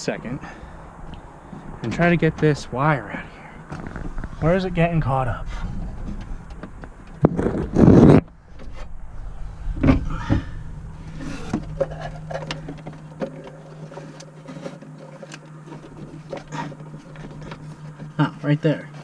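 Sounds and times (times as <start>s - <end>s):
steady low hum: 0.0s - 19.0s
loud rustling scrape: 7.2s - 19.0s.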